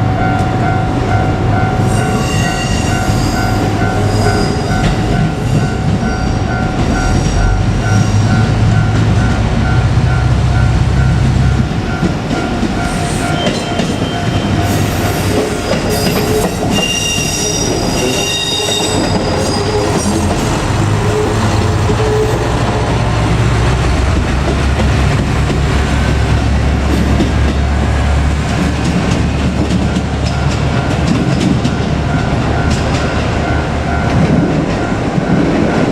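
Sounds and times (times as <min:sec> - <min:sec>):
level-crossing bell ringing: 0:00.0 - 0:23.6
train wheels clacking on rails: 0:00.0 - 0:35.9
high wheel squeals: 0:12.8 - 0:24.0
diesel engine rumbling: 0:19.0 - 0:35.9.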